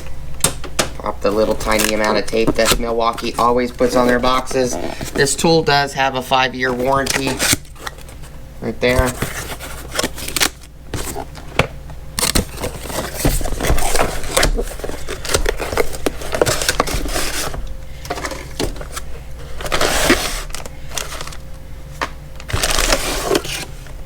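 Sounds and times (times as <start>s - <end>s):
cardboard box being unpacked: 1.2s - 5.7s, 6.7s - 24.0s.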